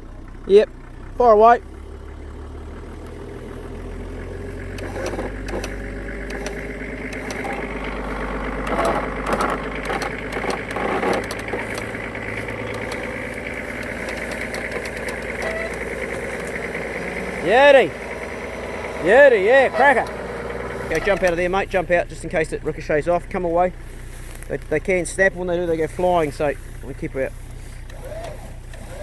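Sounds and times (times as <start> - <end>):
vehicle engine humming: 0.0 - 29.0.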